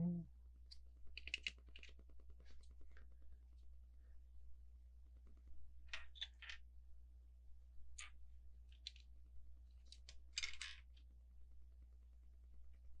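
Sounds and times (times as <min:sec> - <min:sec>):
plastic bricks clicking and rattling: 0:01.1 - 0:03.0, 0:05.9 - 0:06.6, 0:09.9 - 0:11.0.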